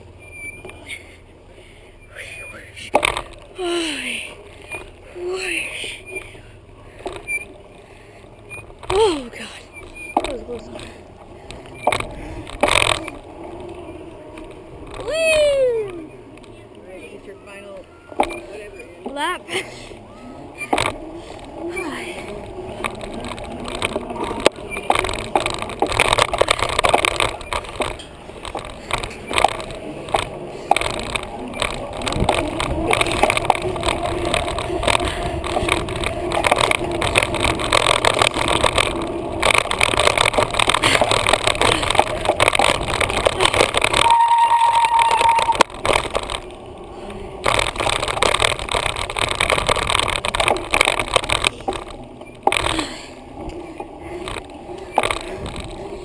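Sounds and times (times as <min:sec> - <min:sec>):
bicycle riding rumble: 0:00.0 - 0:56.0
rattling and clicks: 0:02.8 - 0:56.0
brief steady tone: 0:43.9 - 0:45.7.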